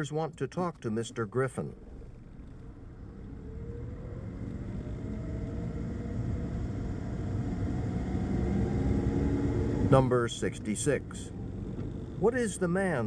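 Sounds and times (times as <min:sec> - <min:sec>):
motor vehicle rumble: 0:00.4 - 0:13.0
faint rising whine: 0:01.3 - 0:13.0.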